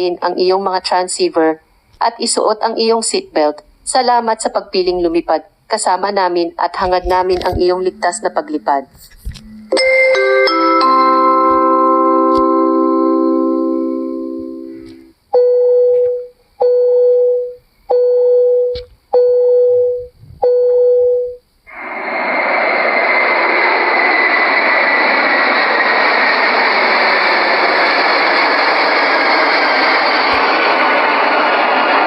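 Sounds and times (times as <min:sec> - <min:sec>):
faint high engine whine: 0:00.0 - 0:32.0
electronic chime tones: 0:07.6 - 0:08.8, 0:09.4 - 0:21.4.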